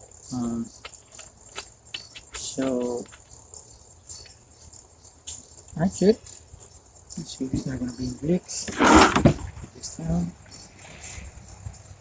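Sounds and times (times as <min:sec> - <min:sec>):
person speaking: 0:02.3 - 0:03.1.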